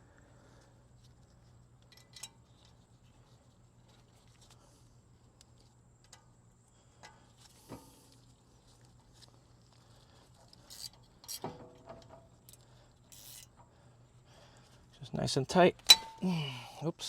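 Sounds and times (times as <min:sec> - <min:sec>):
ringing metal clinks: 0:15.9 - 0:16.5.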